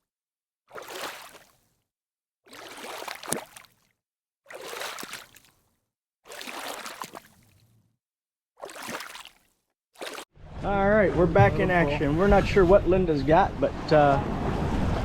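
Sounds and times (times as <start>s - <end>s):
water splashing and sloshing: 0.7s - 8.0s, 8.6s - 10.6s.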